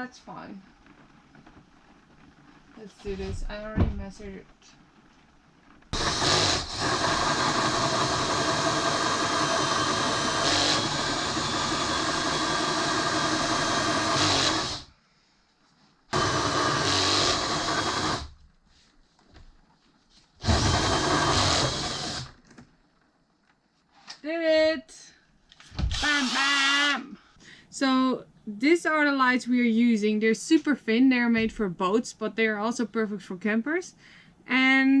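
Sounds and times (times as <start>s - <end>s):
electric drill cutting metal: 6.0s - 14.9s, 16.2s - 18.4s, 20.4s - 22.4s, 25.9s - 26.8s.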